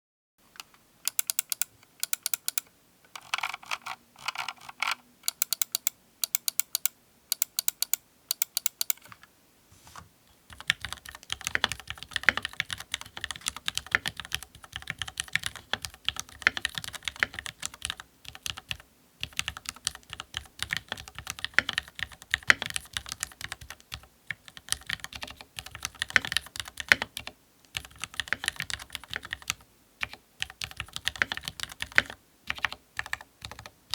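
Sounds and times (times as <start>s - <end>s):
mechanical keyboard typing: 0.6s - 9.2s, 10.5s - 33.9s.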